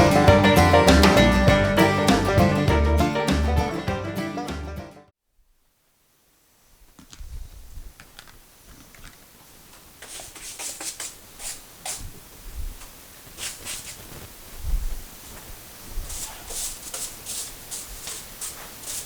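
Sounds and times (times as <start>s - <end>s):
rustling and shuffling: 6.6s - 19.0s.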